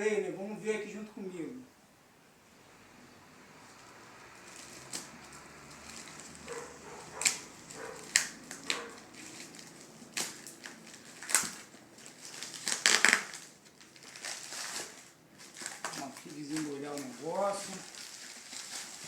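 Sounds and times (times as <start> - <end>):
package crackling and knocking: 4.5 - 19.0.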